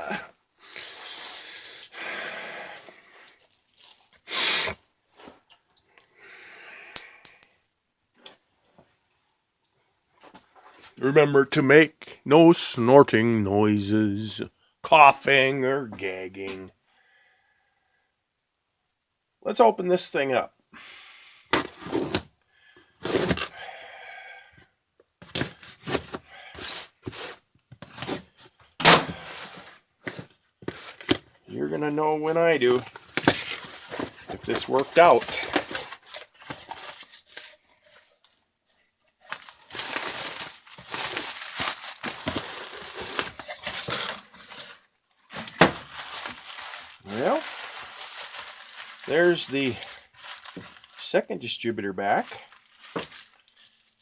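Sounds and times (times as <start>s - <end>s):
man wheezy snorting breathing: 0.0s - 3.1s, 23.4s - 24.6s
package ripping and crackling: 39.3s - 51.0s, 52.4s - 54.0s.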